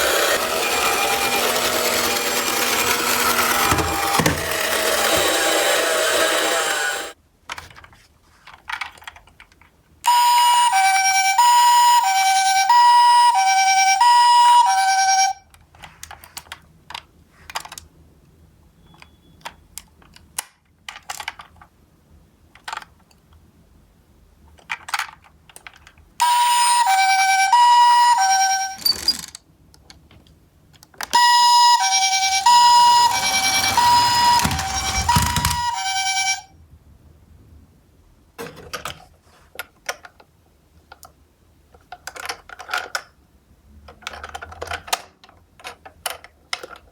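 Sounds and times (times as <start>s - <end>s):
two-tone ambulance siren: 10.1s - 15.4s, 26.2s - 28.9s, 31.2s - 36.5s.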